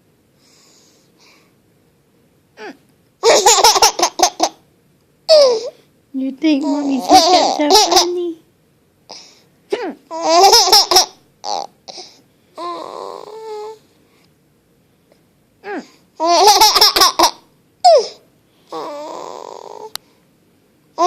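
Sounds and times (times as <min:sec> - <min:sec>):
baby laughing: 0:03.2 - 0:04.6, 0:05.3 - 0:05.7, 0:06.6 - 0:08.4, 0:10.1 - 0:11.7, 0:16.2 - 0:18.2.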